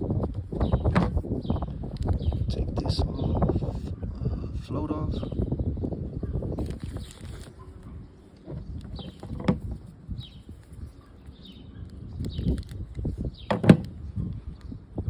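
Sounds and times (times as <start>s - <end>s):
carburetor parts clicking and knocking: 13.5s - 13.9s.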